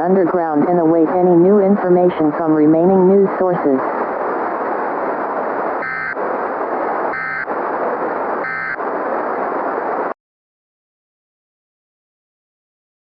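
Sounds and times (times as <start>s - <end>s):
static hiss: 1.5s - 10.2s
data chirps: 5.8s - 6.2s, 7.1s - 7.5s, 8.4s - 8.8s.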